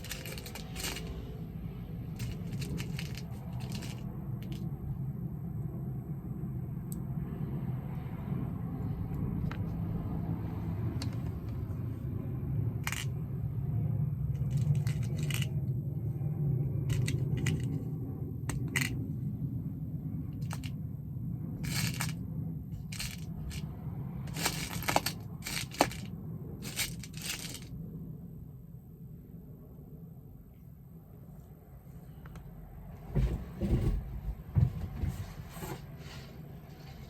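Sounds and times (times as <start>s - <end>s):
metal lock pins clicking and rattling: 0.0s - 1.2s, 2.2s - 4.7s, 24.3s - 27.7s
steady low rumble: 0.0s - 37.0s.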